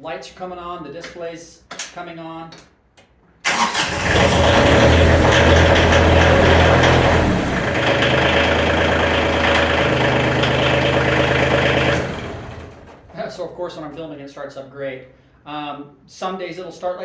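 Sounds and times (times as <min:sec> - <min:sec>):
tractor diesel engine idling: 0:03.5 - 0:13.2.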